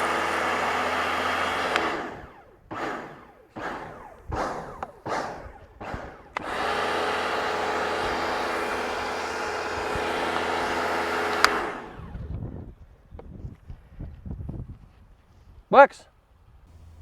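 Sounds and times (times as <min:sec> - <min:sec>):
pressure washer motor humming: 0:00.0 - 0:12.3, 0:16.7 - 0:17.0.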